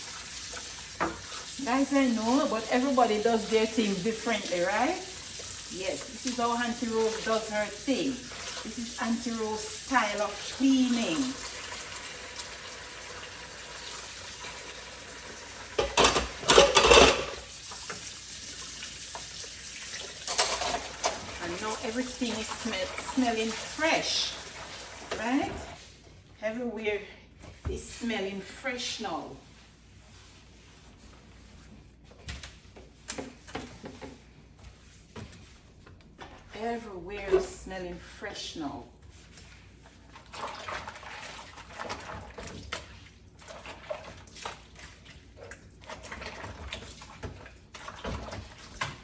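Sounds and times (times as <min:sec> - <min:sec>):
tap water running into sink: 0:00.0 - 0:25.8.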